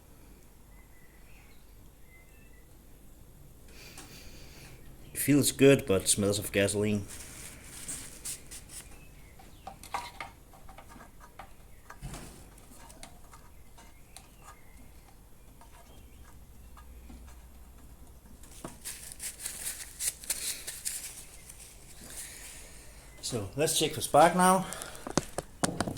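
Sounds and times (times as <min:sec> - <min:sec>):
rustling: 0:06.9 - 0:25.6.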